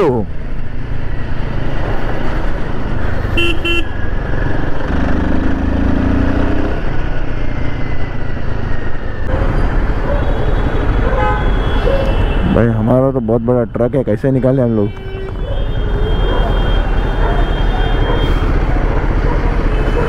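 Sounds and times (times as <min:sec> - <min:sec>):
vehicle horn toots: 0:03.4 - 0:03.9, 0:10.4 - 0:12.6.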